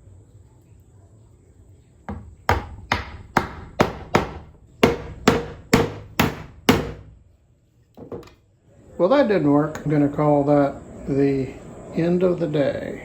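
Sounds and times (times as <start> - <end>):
hammer striking dowels: 2.1 - 7.1.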